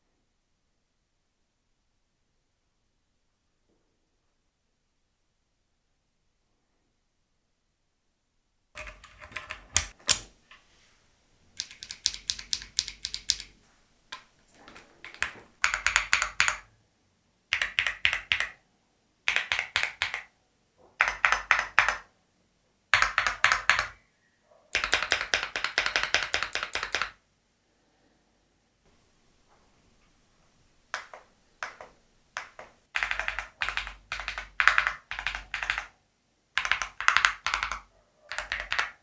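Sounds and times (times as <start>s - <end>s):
mechanical keyboard typing: 8.8s - 10.3s, 11.6s - 13.6s, 14.2s - 16.7s, 17.5s - 18.6s, 19.3s - 20.3s, 21.0s - 22.1s, 23.0s - 24.0s, 24.7s - 27.2s, 30.9s - 35.9s, 36.6s - 39.0s
louder clicks: 9.6s - 10.4s.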